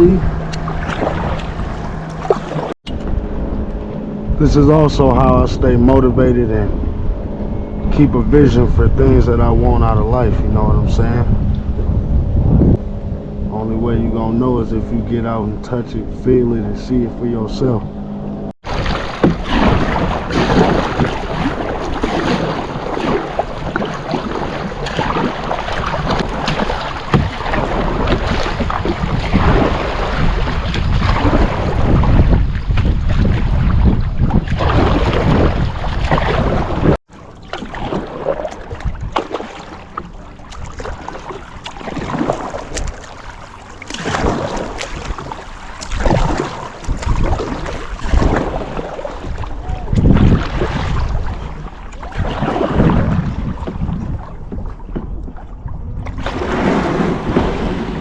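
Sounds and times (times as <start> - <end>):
paddle splashing water: 0.0 - 5.3, 18.6 - 58.0
wind buffeting microphone: 0.0 - 58.0.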